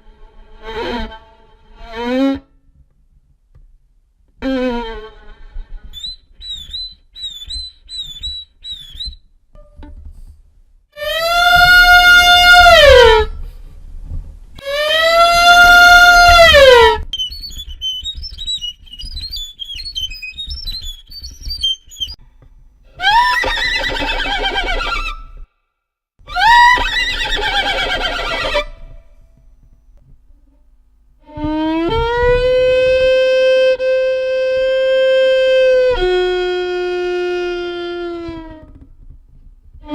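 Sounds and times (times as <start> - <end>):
violin imitating horse whinny: 11.0 - 13.3, 14.6 - 17.1, 22.9 - 25.4, 26.3 - 29.0
long held violin note: 31.2 - 38.8.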